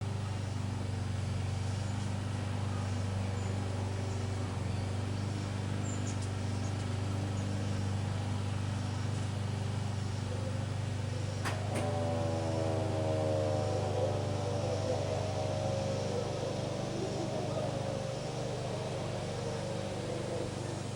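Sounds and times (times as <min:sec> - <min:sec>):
faint steady tones: 0:00.0 - 0:20.9
low hum: 0:05.8 - 0:20.9.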